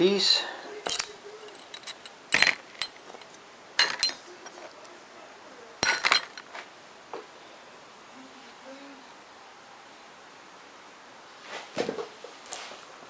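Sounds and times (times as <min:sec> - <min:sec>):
small metal hardware clinking: 0:00.8 - 0:04.2, 0:05.8 - 0:06.6.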